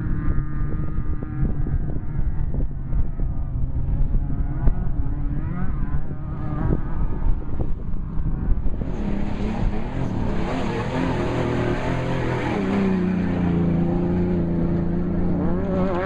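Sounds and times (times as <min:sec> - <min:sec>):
race vehicle engines running hard: 0:00.0 - 0:16.0.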